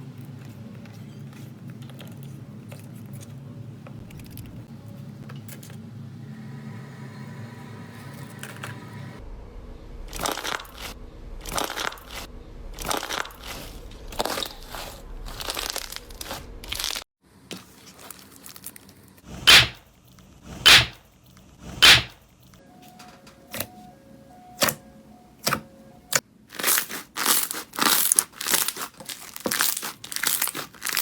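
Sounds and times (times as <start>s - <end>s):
crunchy slime being squeezed: 12.8s - 17.0s, 26.6s - 31.0s.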